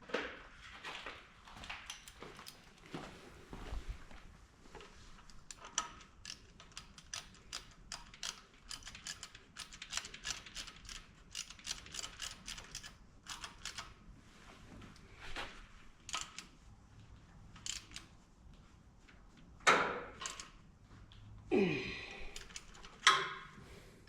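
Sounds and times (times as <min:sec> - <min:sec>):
ratchet wrench clicking: 0:05.4 - 0:13.9.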